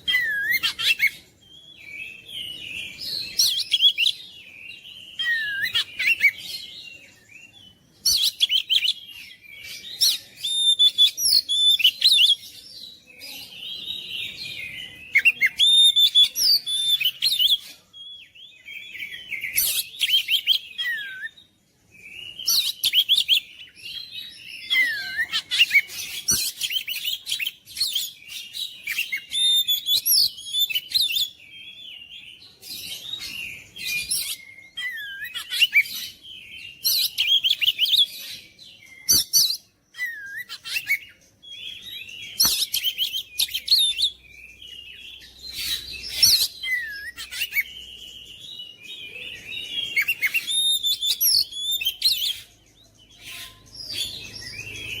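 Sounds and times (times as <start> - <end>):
bird singing whistles and trills: 0.0 - 55.0.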